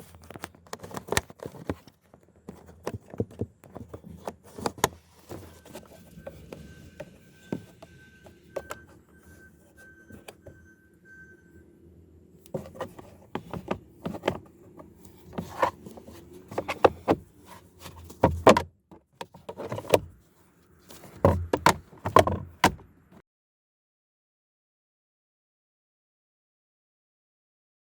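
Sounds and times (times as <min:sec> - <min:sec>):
faint high beep: 0:05.4 - 0:12.0
plastic trim clicks and knocks: 0:18.0 - 0:18.7, 0:21.2 - 0:22.9.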